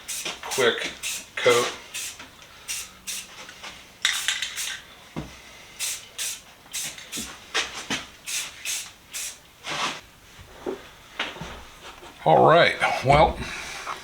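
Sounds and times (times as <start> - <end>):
spray can bursts: 0.0 - 3.4, 4.0 - 4.8, 5.8 - 7.4, 8.2 - 9.4.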